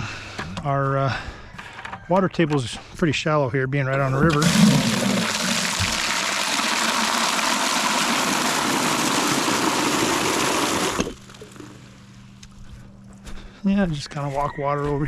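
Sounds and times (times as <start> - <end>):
water gushing into a bucket: 4.2 - 11.9.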